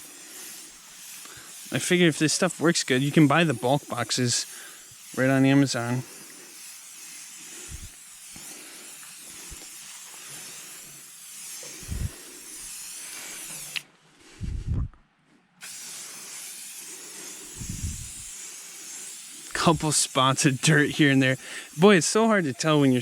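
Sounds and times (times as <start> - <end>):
aerosol spray hissing: 0.0 - 13.8, 15.6 - 23.0
faint low thumps: 14.4 - 15.0.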